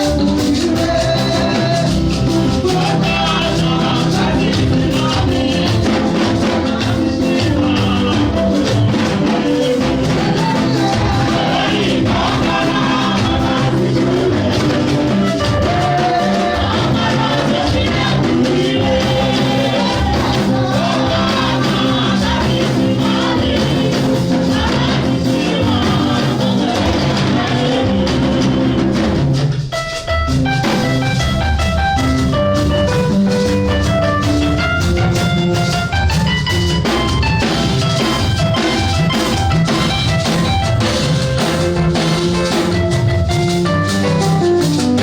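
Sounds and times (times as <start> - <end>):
worship singing over a band: 0.0 - 29.4
instrumental melody over drums: 0.0 - 45.0.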